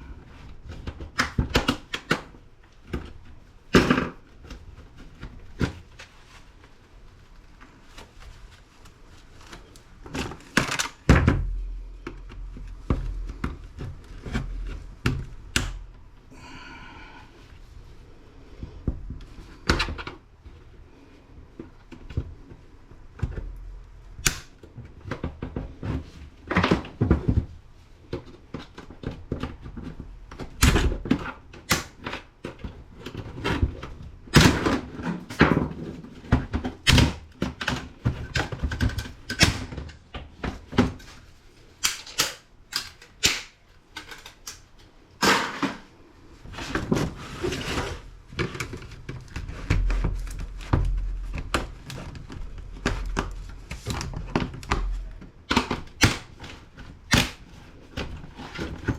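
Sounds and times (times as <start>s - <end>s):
sharp plastic cracks: 0.9s - 3.1s, 10.1s - 11.6s, 15.0s - 16.0s, 24.2s - 25.3s, 30.3s - 32.6s, 41.8s - 45.6s, 51.3s - 57.6s.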